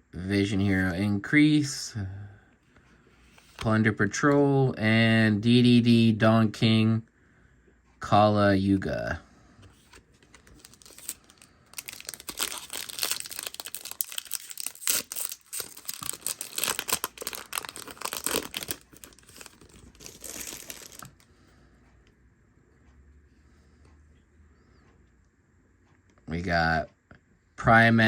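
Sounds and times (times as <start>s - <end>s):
foil wrapper crinkling and tearing: 10.3s - 21.2s.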